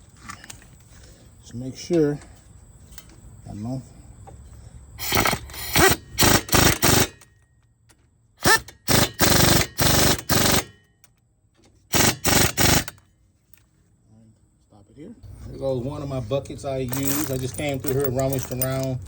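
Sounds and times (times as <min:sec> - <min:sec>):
impact wrench hammering: 0:08.4 - 0:11.0, 0:11.9 - 0:13.0.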